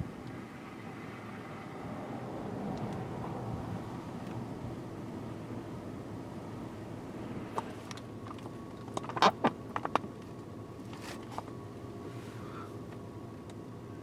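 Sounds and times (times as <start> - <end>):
vehicle interior rumble: 0.0 - 14.0
sharp clicks and knocks: 7.6 - 10.3.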